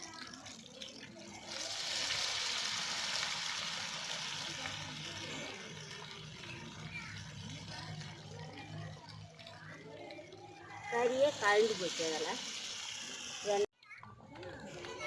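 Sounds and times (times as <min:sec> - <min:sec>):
chicken sizzling in hot oil: 0:00.0 - 0:13.7.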